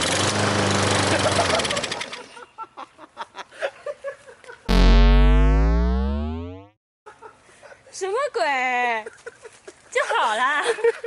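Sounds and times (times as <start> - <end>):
cartoon boing sound effect: 4.7 - 6.7.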